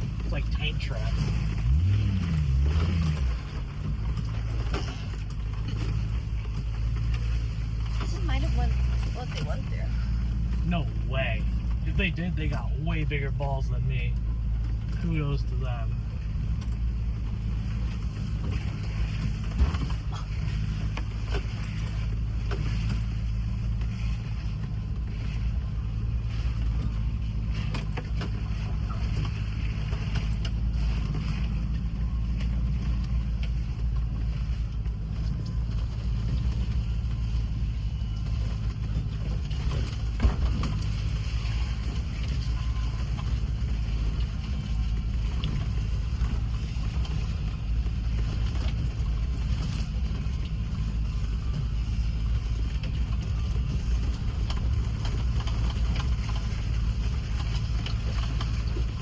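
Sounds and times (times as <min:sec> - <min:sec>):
engine low rumble: 0:00.0 - 0:59.0
knocks and rattles from suspension: 0:38.2 - 0:47.5.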